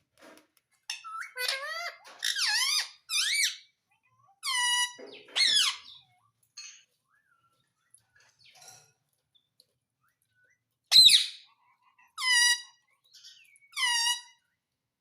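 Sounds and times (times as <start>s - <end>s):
parrot calling: 0.9s - 6.2s, 10.9s - 14.5s.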